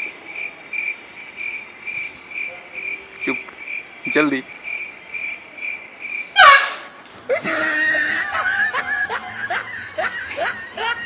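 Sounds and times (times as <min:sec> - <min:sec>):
loud train horn blast: 0:06.4 - 0:07.1
people laughing: 0:07.2 - 0:11.0.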